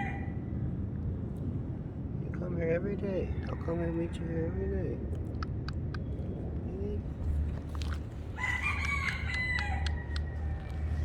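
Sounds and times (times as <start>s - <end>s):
rooster crowing: 0.0s - 0.3s, 8.4s - 10.8s
steady low rumble: 0.0s - 11.0s.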